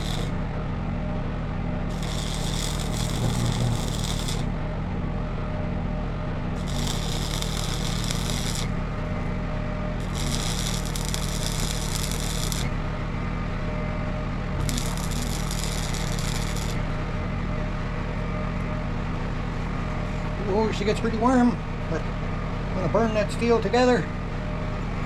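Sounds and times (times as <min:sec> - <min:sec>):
welding arc crackling: 0:00.0 - 0:00.4, 0:01.9 - 0:04.6, 0:06.6 - 0:09.2, 0:10.0 - 0:12.8, 0:14.6 - 0:16.9
generator running: 0:00.0 - 0:20.5.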